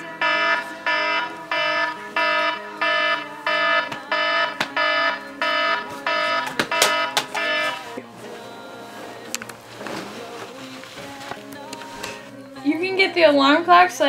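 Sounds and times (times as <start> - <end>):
alarm clock beeping: 0.0 - 8.0.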